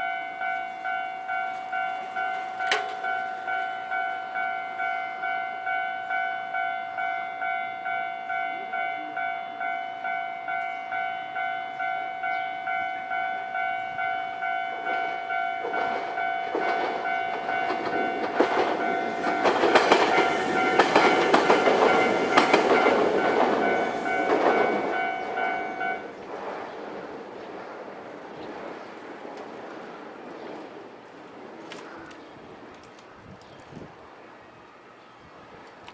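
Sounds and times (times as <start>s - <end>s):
level crossing warning bell: 0.0s - 26.1s
train wheels clattering: 14.7s - 33.1s.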